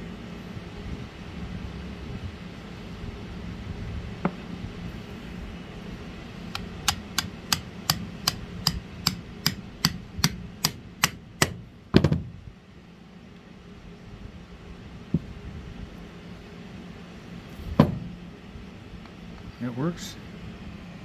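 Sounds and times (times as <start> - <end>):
steady low hum: 0.0 - 21.0
sharp metal taps: 6.5 - 11.7
heavier knock: 17.8 - 18.2.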